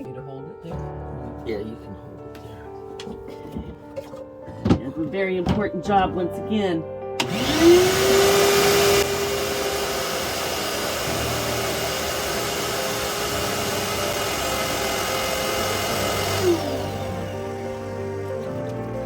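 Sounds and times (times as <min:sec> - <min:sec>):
vacuum cleaner motor whining: 0:07.2 - 0:19.0.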